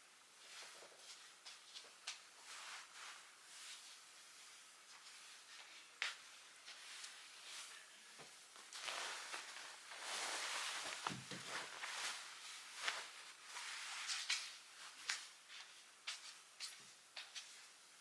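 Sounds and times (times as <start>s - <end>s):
short rustle: 8.6s - 15.0s.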